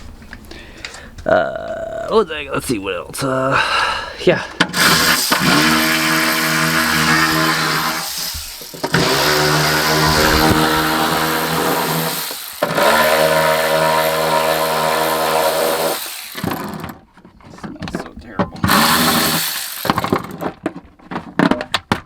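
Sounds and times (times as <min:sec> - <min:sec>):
power tool motor running: 0:04.6 - 0:16.9, 0:18.6 - 0:20.5.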